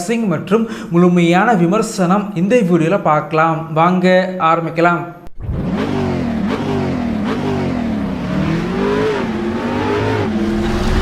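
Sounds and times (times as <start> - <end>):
car engine revving: 5.4 - 11.0.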